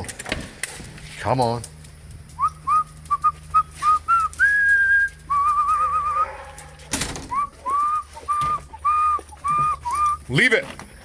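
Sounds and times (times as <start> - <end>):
person whistling: 2.4 - 6.2, 7.3 - 10.2.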